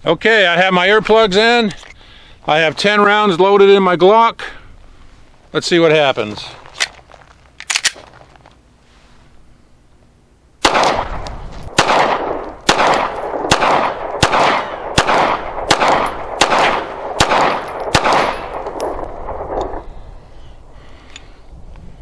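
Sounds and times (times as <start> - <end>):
pistol shots: 10.6 - 19.9.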